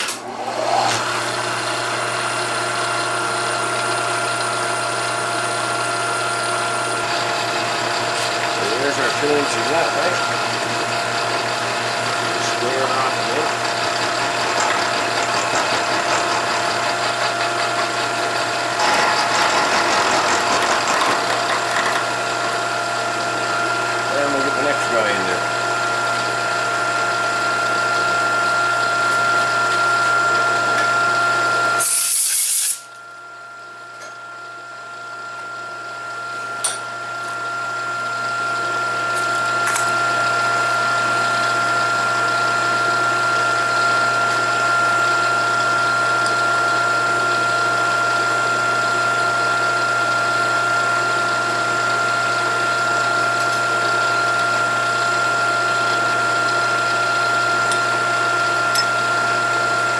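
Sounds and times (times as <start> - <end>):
milling machine whining: 0.0 - 32.5, 34.0 - 59.9
brief high hiss: 31.8 - 32.9.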